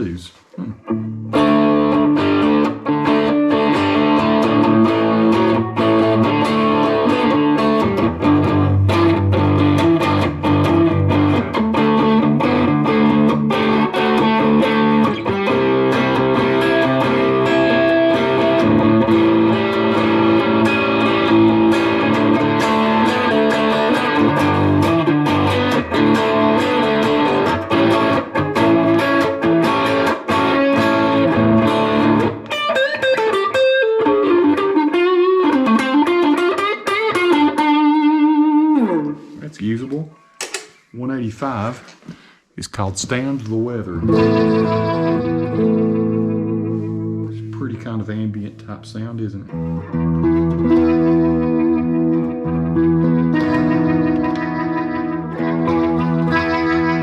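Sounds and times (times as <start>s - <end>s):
electric guitar playing: 0.6s - 40.8s, 43.7s - 48.4s, 49.0s - 57.0s.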